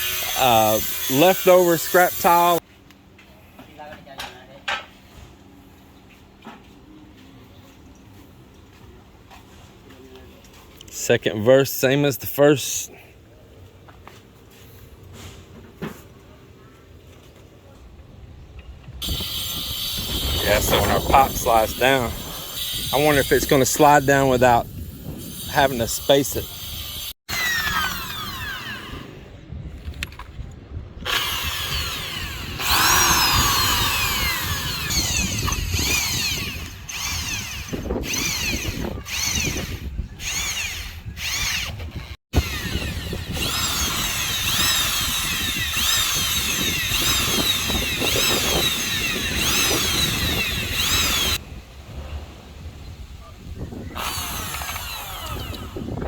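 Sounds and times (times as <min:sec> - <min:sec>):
electric drill boring into pipe: 0:00.0 - 0:02.6, 0:19.0 - 0:24.5, 0:25.3 - 0:29.2, 0:31.0 - 0:51.4, 0:54.0 - 0:56.0.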